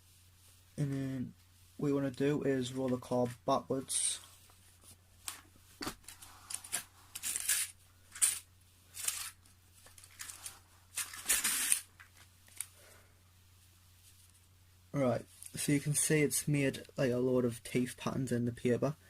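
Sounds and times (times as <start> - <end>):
paper crinkling through gears: 6.5 - 11.9.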